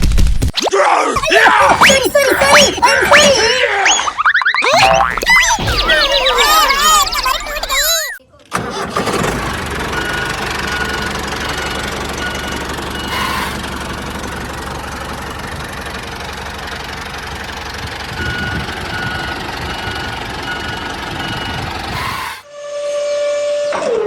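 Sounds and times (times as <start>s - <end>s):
tractor engine chugging: 8.6s - 22.4s.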